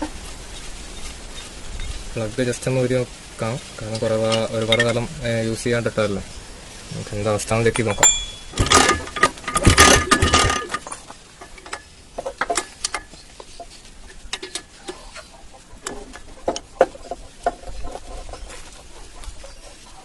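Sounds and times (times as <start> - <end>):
metal tools clinking: 4.0 - 5.1, 7.8 - 13.1.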